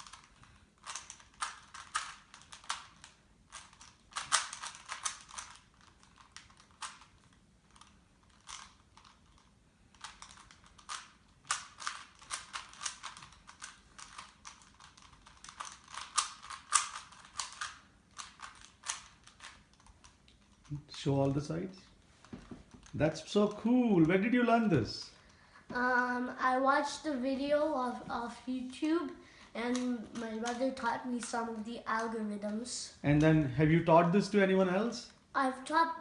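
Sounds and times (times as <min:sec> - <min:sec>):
puzzle cube clicking: 0:00.0 - 0:20.7, 0:29.6 - 0:32.1.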